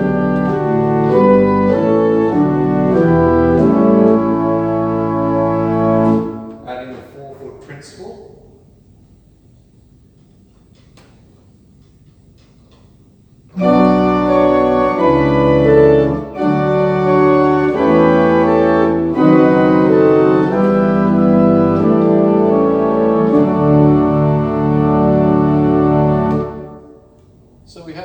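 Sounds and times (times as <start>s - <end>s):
pipe organ sustained chords: 0.0s - 6.7s, 13.5s - 27.3s.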